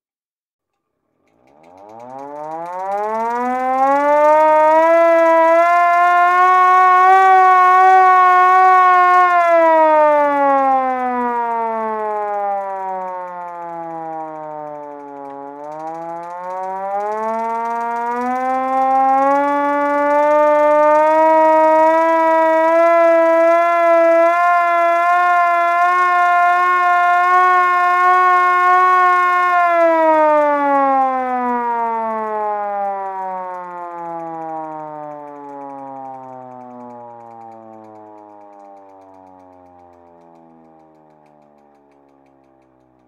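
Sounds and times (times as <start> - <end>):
manual fire truck siren wailing: 1.5 - 43.0.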